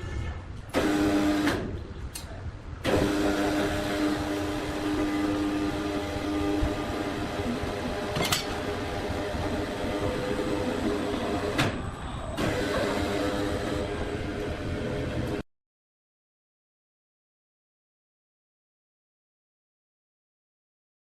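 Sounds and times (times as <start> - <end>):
machinery humming: 2.8 - 15.4.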